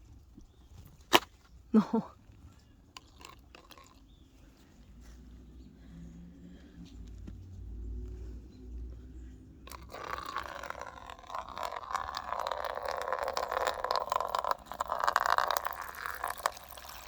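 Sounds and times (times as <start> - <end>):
water pouring: 9.7 - 17.0.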